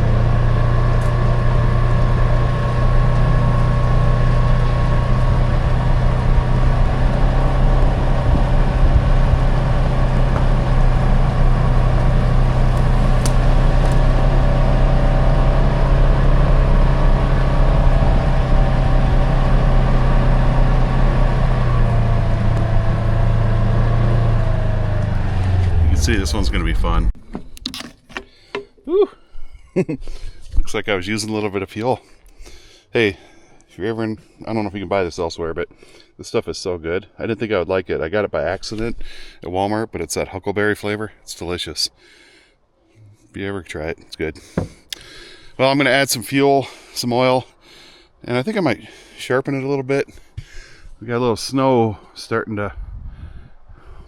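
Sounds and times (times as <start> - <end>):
vehicle engine running: 0.0 - 27.2.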